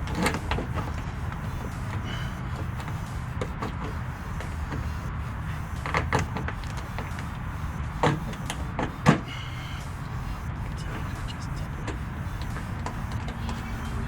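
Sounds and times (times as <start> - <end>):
steady low rumble: 0.0 - 14.0
sharp knocks and clicks: 8.0 - 10.0, 11.2 - 14.0.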